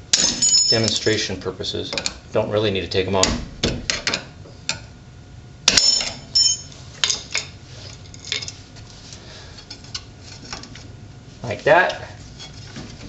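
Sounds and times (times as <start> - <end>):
sharp ringing metal clink: 0.1 - 1.2, 5.7 - 6.8
metal brake parts clinking: 5.7 - 7.5.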